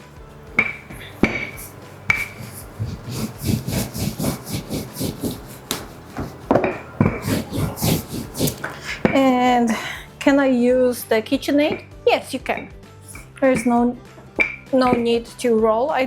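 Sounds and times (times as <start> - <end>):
rolling pin rubbing dough: 0.6 - 9.4, 12.5 - 13.8.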